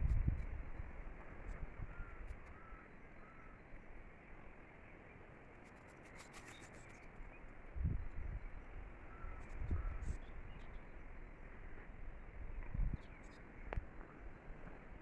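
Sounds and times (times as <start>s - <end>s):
wind gusts on microphone: 0.0s - 2.6s, 7.6s - 15.0s
wind through forest: 0.0s - 15.0s
faint bird calls: 1.4s - 7.5s, 8.5s - 11.0s.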